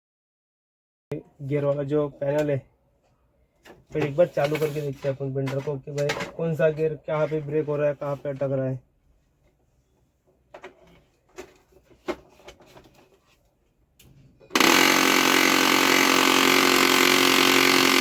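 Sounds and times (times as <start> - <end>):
printer gears grinding: 14.6 - 18.0.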